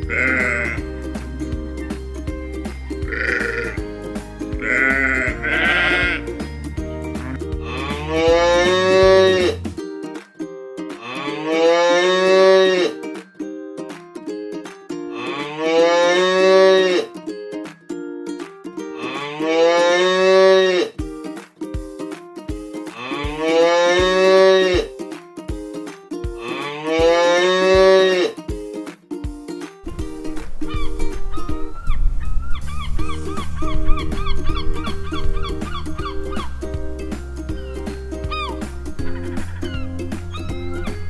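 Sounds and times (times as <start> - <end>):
cow mooing: 0.0 - 0.8, 3.1 - 3.8, 4.6 - 6.2, 7.2 - 9.6, 11.0 - 13.0, 15.2 - 17.1, 19.1 - 20.9, 23.0 - 24.9, 26.4 - 28.4.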